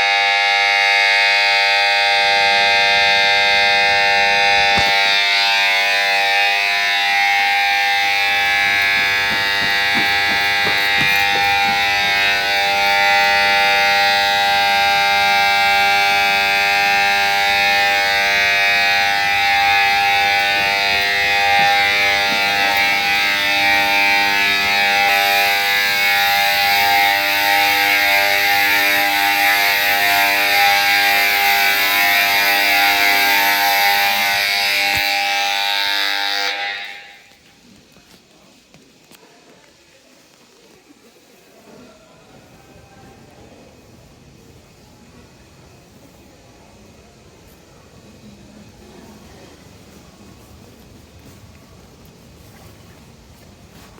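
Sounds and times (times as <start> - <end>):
emergency bell ringing: 0.0 - 37.3.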